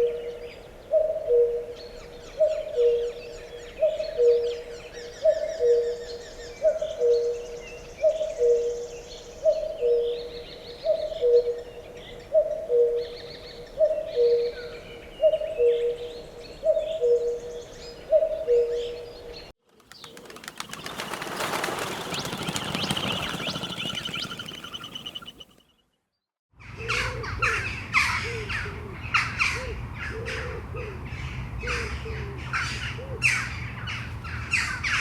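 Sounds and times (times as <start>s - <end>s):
small birds chirping: 18.8s - 26.0s.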